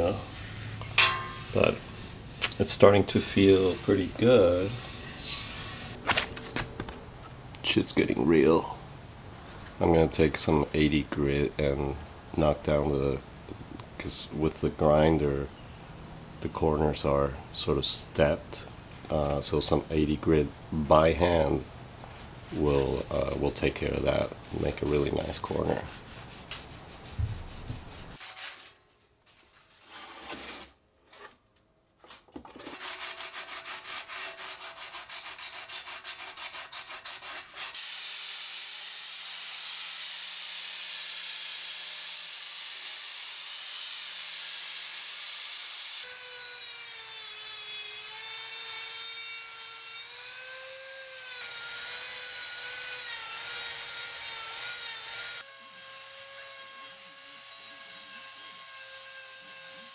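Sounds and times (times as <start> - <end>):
sandpaper rubbing on steel: 0.0 - 6.0, 24.5 - 28.6, 32.8 - 37.8.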